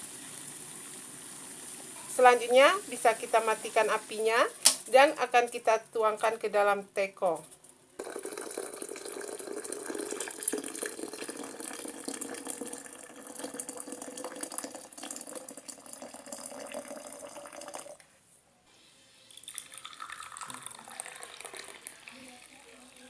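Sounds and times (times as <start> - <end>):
tea pouring into teapot: 8.0 - 18.0, 19.1 - 23.0.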